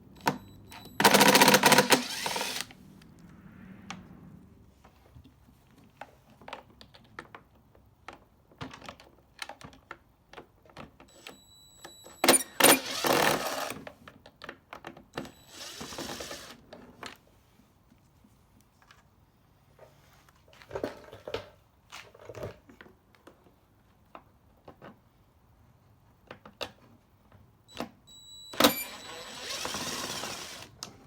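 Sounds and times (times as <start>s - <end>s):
rustling noise: 17.2s - 20.8s.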